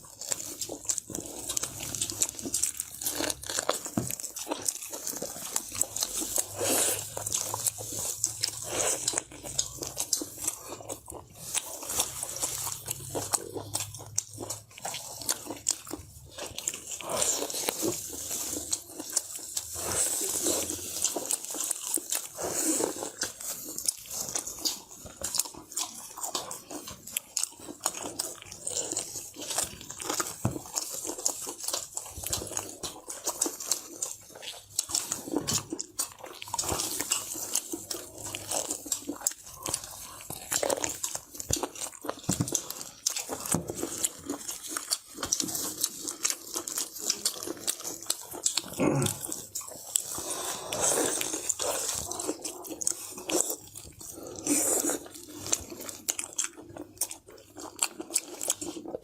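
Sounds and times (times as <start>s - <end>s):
person chewing food: 0.0s - 59.0s.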